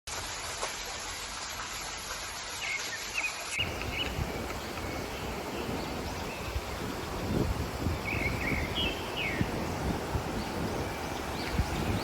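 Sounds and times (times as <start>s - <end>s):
birds chirping: 2.6s - 12.0s
insects buzzing: 3.6s - 12.0s
low wind: 3.6s - 12.0s
steady hiss: 3.6s - 12.0s.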